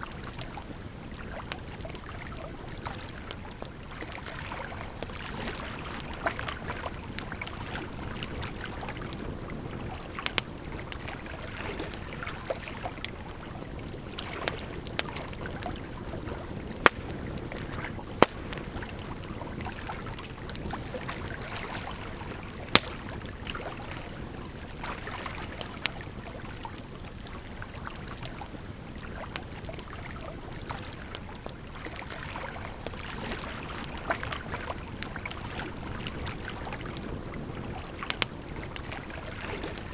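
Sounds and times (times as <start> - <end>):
flowing water: 0.0 - 39.9
firewood crackling and popping: 4.8 - 29.9, 33.9 - 39.9.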